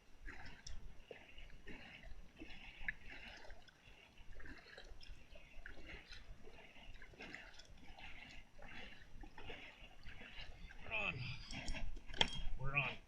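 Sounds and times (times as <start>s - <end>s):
water lapping against kayak hull: 0.0s - 13.0s.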